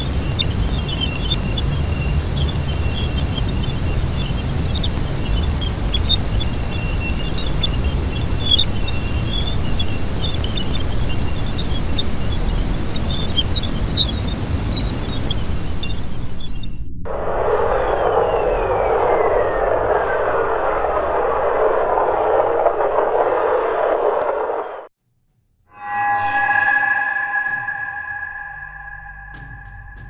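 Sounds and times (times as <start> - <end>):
deep steady rumble: 0.0 - 24.6
thin steady high tone: 25.7 - 30.0
short high chirps: 25.8 - 30.0.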